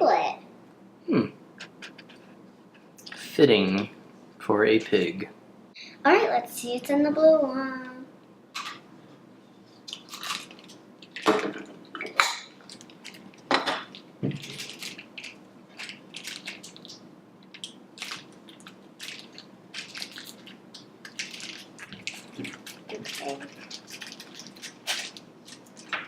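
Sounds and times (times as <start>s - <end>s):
packaging crinkling and rustling: 9.9s - 11.3s, 12.6s - 26.0s.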